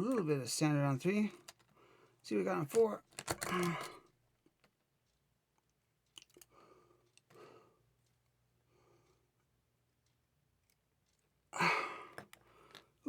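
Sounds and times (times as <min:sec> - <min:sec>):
small clicks of lock parts: 0:01.4 - 0:01.8, 0:02.7 - 0:07.4, 0:10.6 - 0:11.4, 0:12.1 - 0:13.0
soft breaths: 0:01.4 - 0:02.2, 0:06.4 - 0:09.6.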